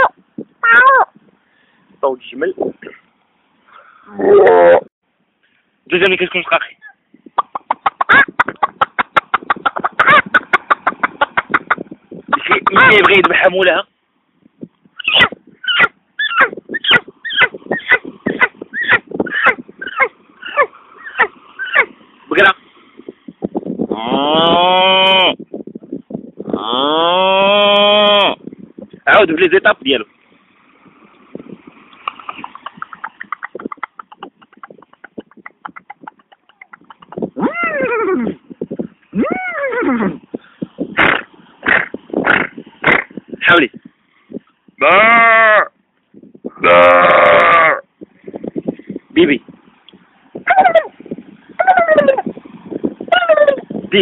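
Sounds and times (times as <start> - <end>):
man imitating animal cries: 4.1 - 4.9, 15.0 - 21.9, 23.9 - 25.4, 26.5 - 28.4, 37.4 - 38.4, 39.1 - 40.2, 44.8 - 45.7, 46.6 - 47.8, 50.5 - 50.9, 51.6 - 52.2, 53.1 - 53.7
man imitating horse whinny: 23.9 - 25.4, 26.6 - 28.4, 44.8 - 45.7, 46.6 - 47.8
man clicking tongue like hooves: 31.9 - 37.4.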